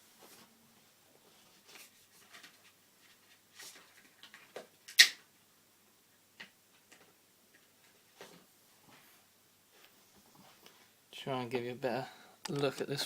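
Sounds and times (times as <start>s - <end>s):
light clicks of handling memory modules: 12.4s - 13.0s.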